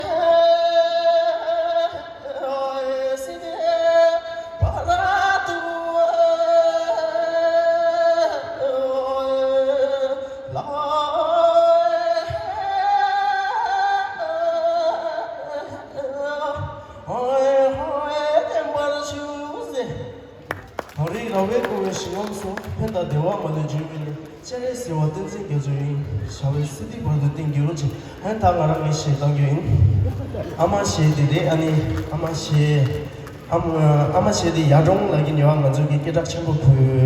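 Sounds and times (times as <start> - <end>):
person singing with vibrato: 0.0 - 20.4.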